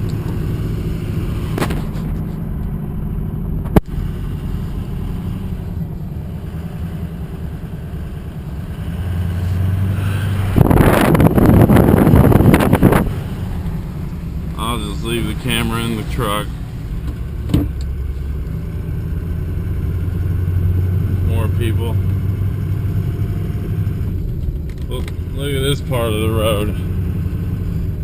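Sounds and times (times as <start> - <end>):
vehicle engine running: 0.0 - 28.0
loud rushing noise: 9.8 - 13.6.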